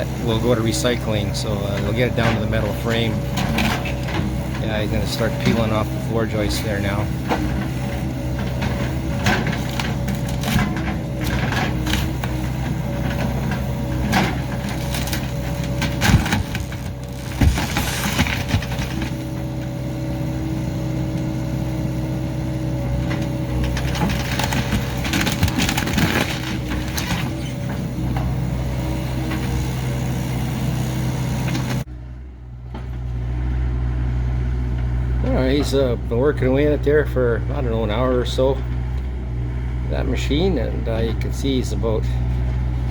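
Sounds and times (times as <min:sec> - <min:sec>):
excavator engine running: 0:00.0 - 0:42.9
wood cracking and splintering: 0:09.4 - 0:13.1, 0:14.0 - 0:19.3, 0:23.6 - 0:27.7.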